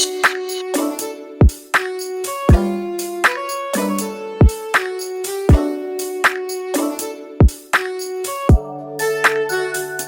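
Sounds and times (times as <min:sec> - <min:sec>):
held melodic notes: 0:02.5 - 0:06.1
kick drum beat: 0:04.4 - 0:04.6.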